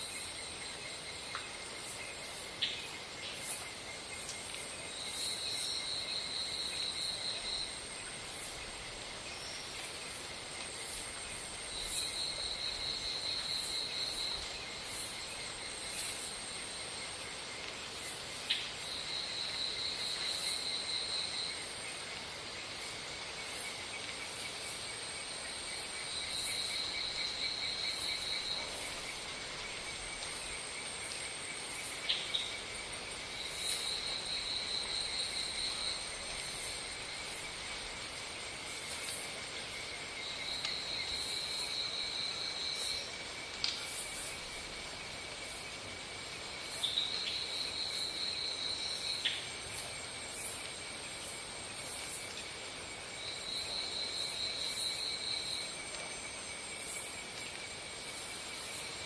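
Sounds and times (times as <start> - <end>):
rapid pulsing insect trill: 0.0 - 59.0.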